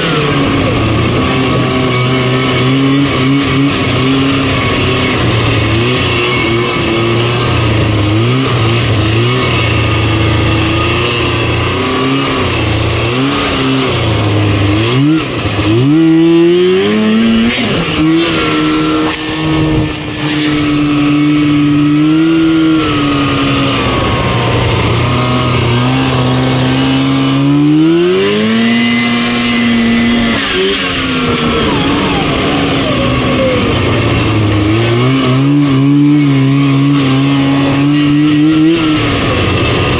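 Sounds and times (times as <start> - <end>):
snowmobile engine revving: 0.0 - 39.9.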